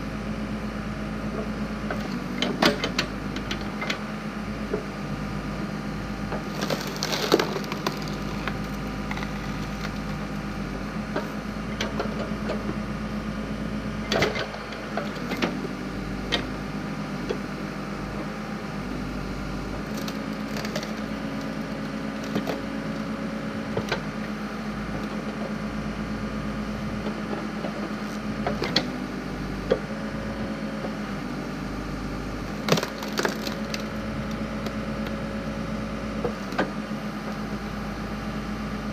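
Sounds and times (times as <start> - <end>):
backhoe engine running: 0.0 - 38.9
wood splitting with cracks: 6.3 - 12.3, 19.8 - 23.2, 32.3 - 35.2.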